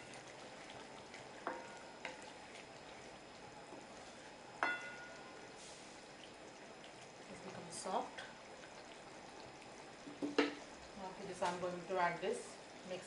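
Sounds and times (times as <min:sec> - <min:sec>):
chicken sizzling: 0:00.0 - 0:12.4
metal utensil striking pot: 0:04.6 - 0:05.2.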